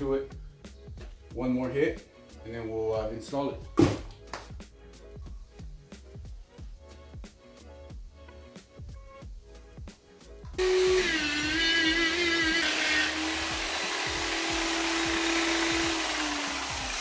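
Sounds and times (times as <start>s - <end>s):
electric buffer running: 10.6s - 17.0s.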